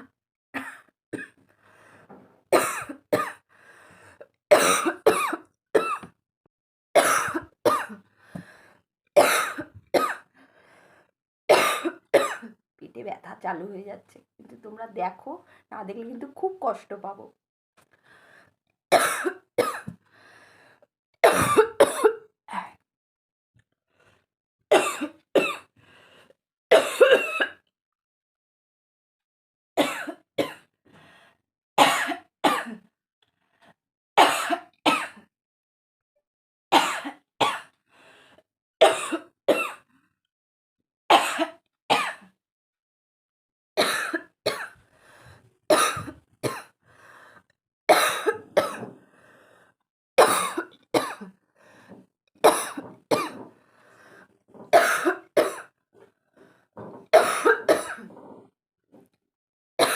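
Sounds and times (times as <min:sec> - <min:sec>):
person coughing harshly: 0:02.6 - 0:03.4, 0:04.5 - 0:06.1, 0:07.0 - 0:08.0, 0:09.2 - 0:10.3, 0:11.5 - 0:12.5, 0:18.9 - 0:20.0, 0:21.2 - 0:22.2, 0:24.7 - 0:25.7, 0:26.7 - 0:27.6, 0:29.8 - 0:30.6, 0:31.8 - 0:32.8, 0:34.2 - 0:35.2, 0:36.8 - 0:37.7, 0:38.8 - 0:39.8, 0:41.1 - 0:42.3, 0:43.8 - 0:44.8, 0:45.7 - 0:46.7, 0:47.9 - 0:48.9, 0:50.2 - 0:51.3, 0:52.5 - 0:53.5, 0:54.6 - 0:55.7, 0:56.8 - 0:58.4.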